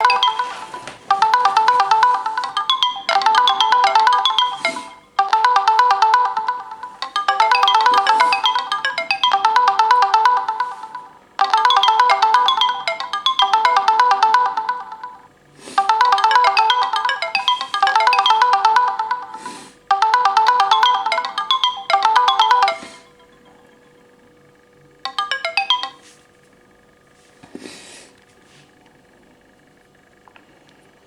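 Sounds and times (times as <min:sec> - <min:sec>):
phone alarm chiming melody: 0:00.0 - 0:23.9, 0:25.1 - 0:26.1.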